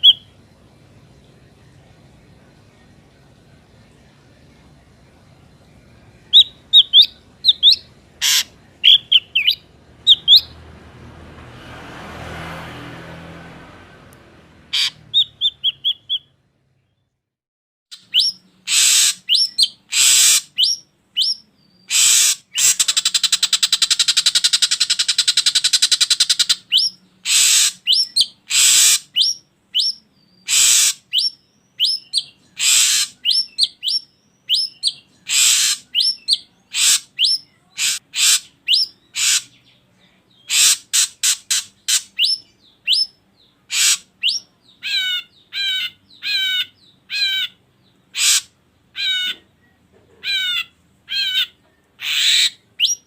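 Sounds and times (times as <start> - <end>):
harsh rasping bird calls: 0.0 - 0.6, 2.3 - 11.2, 12.1 - 16.4, 17.9 - 53.0
bird whistled notes: 18.0 - 36.5
fast buzzing rattle call: 18.7 - 19.2, 19.9 - 20.5, 21.9 - 26.6, 27.2 - 27.8, 28.5 - 29.1, 30.5 - 31.0, 35.3 - 35.8.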